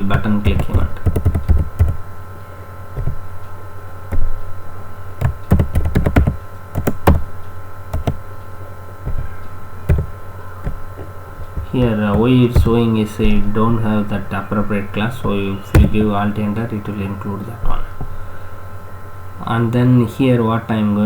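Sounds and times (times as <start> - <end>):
electrical hum: 0.0 - 21.0
keyboard typing: 0.1 - 2.0, 3.0 - 3.3, 5.2 - 7.3, 7.9 - 8.3, 9.1 - 12.8.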